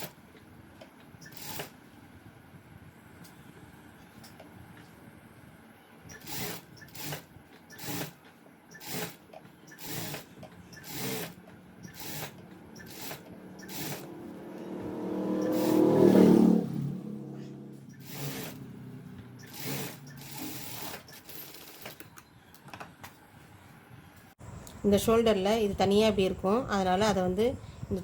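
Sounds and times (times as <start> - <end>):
electric sewing machine stitching: 1.2 - 1.8, 6.1 - 8.2, 8.8 - 16.8, 17.9 - 18.8, 19.4 - 22.0.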